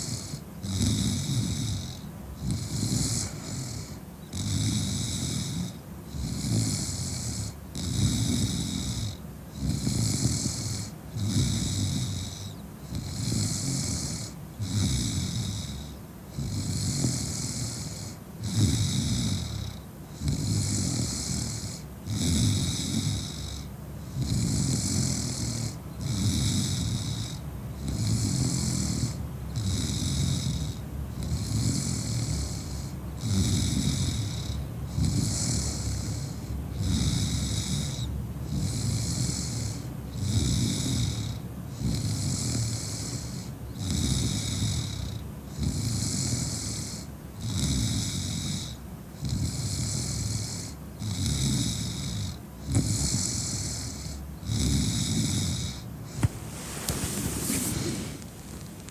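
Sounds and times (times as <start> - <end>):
woman snoring: 53.1 - 58.9.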